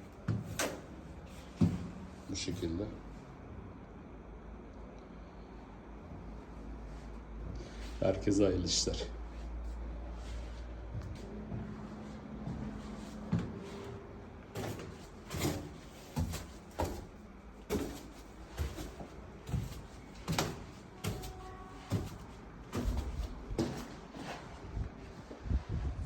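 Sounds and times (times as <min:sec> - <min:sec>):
low steady hum: 0:00.0 - 0:26.0
short knocks and thumps: 0:14.6 - 0:23.9.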